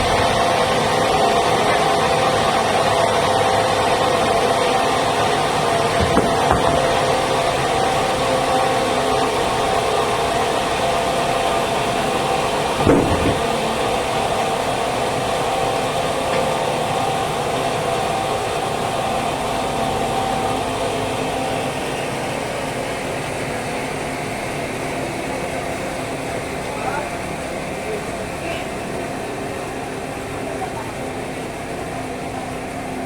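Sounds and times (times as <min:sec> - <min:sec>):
sawmill machinery humming: 0:00.0 - 0:33.0
single knock: 0:06.0 - 0:07.0, 0:12.8 - 0:13.6.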